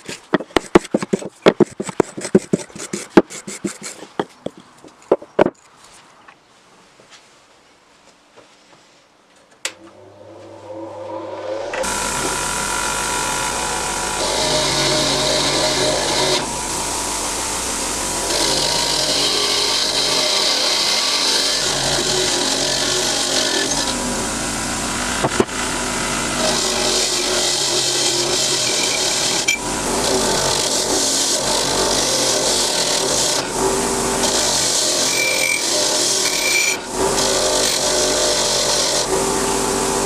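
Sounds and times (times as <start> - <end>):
harsh scraping: 0.0 - 4.6
power tool running on metal: 11.5 - 40.0.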